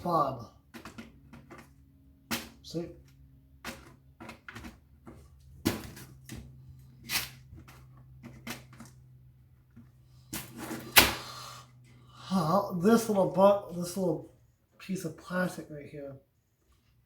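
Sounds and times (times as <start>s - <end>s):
plastic parts clattering: 0.7s - 9.0s.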